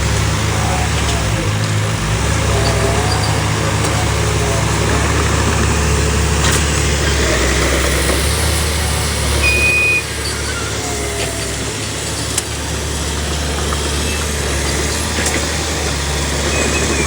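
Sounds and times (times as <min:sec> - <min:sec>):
diesel engine running: 0:00.0 - 0:17.0.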